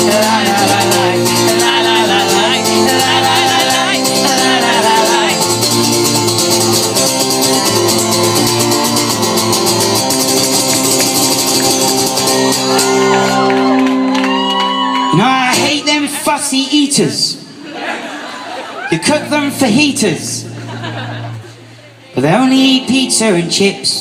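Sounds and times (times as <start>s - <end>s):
person singing la la la: 0.0s - 5.7s
strummed acoustic guitar: 0.0s - 13.7s.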